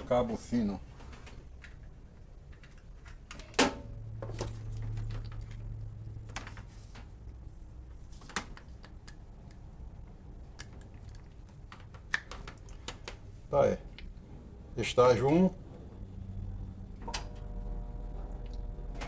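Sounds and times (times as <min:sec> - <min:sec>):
low electrical hum: 0:00.0 - 0:19.0.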